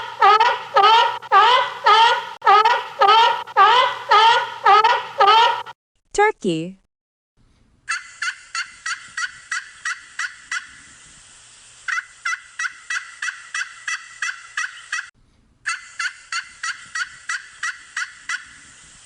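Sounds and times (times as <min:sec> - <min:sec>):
turkey gobbling: 0:00.0 - 0:05.8, 0:07.9 - 0:10.8, 0:11.9 - 0:15.1, 0:15.7 - 0:18.6.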